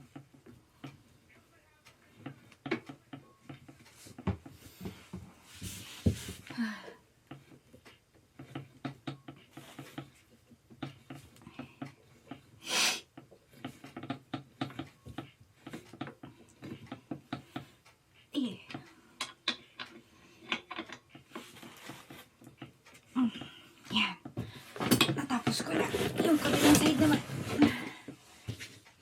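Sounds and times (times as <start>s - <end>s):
small clicks and taps of screwing: 1.9s - 5.2s, 7.2s - 12.5s, 13.1s - 25.2s.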